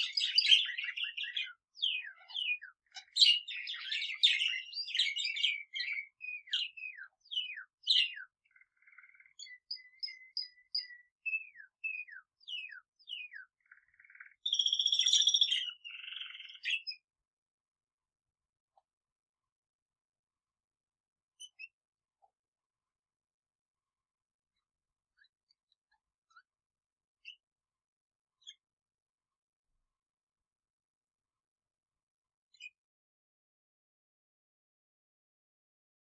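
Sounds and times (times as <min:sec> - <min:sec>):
birds chirping and whistling: 0:00.0 - 0:17.0.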